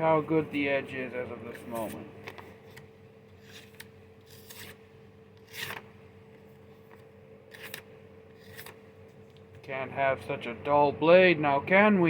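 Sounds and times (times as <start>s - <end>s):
knife edge scraping: 3.4s - 4.8s, 5.4s - 5.9s, 7.5s - 8.8s.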